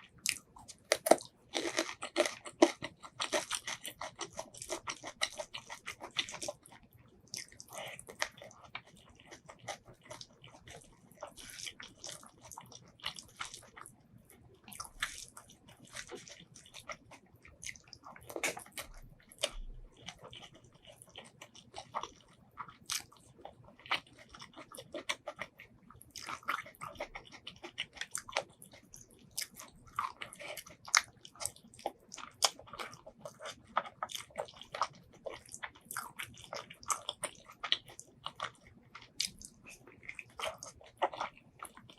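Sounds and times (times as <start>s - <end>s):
chewing and biting: 0.0s - 41.9s
crunchy bites: 0.2s - 6.6s.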